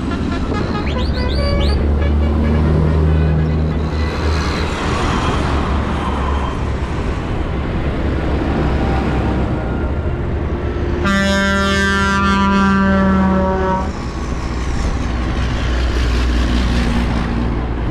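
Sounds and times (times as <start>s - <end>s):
vehicle horn: 0.0s - 3.8s, 11.0s - 14.0s
tractor diesel engine drone: 0.0s - 17.9s
tyre and road noise: 0.0s - 17.9s.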